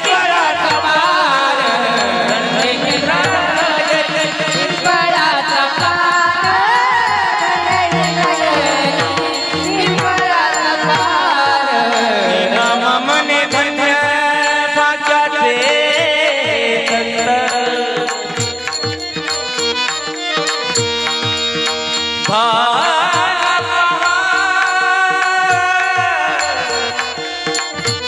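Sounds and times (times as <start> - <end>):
held instrumental tones: 0.0 - 14.2
person singing: 0.0 - 19.6, 22.2 - 28.0.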